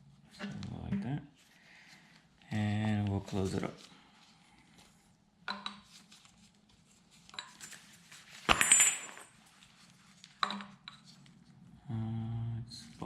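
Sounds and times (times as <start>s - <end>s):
metal part clattering and ringing: 8.5s - 9.3s.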